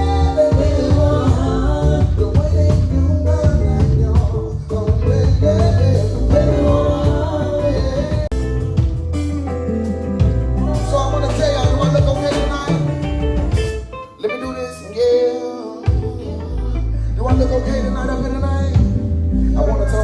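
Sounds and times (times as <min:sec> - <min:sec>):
drums: 0:00.0 - 0:14.2, 0:15.8 - 0:16.3, 0:17.3 - 0:19.3
bass: 0:00.0 - 0:15.3, 0:15.9 - 0:20.0
guitar: 0:00.0 - 0:20.0.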